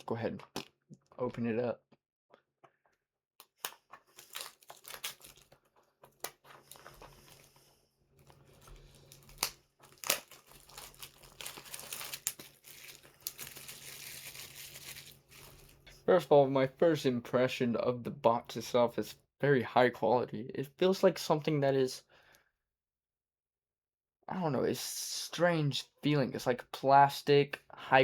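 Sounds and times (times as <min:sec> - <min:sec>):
plastic packaging tearing: 0:03.5 - 0:07.5, 0:08.2 - 0:15.9.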